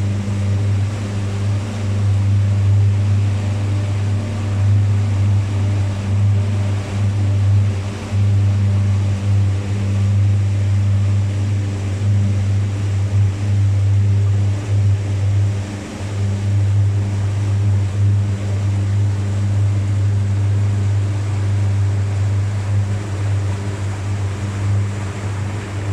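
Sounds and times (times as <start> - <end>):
boat diesel engine droning: 0.0 - 25.9
water rushing along hull: 0.0 - 25.9.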